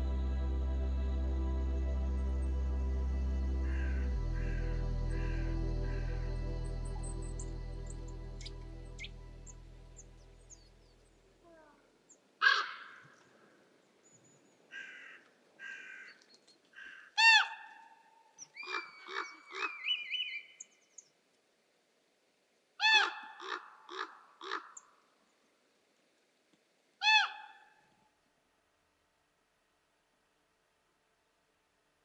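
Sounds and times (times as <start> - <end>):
large birds calling: 3.6 - 10.6.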